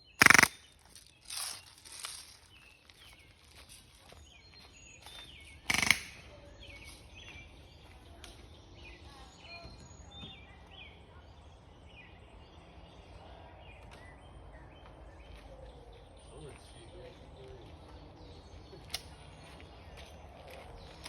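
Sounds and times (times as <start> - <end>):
birds chirping: 0.0 - 21.0
low outdoor background: 0.0 - 21.0
airgun shot: 0.1 - 0.6, 5.7 - 6.3.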